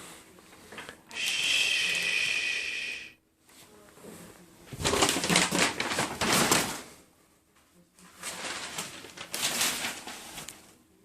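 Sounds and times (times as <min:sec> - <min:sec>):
packaging rustling: 0:04.7 - 0:06.9, 0:08.2 - 0:10.8.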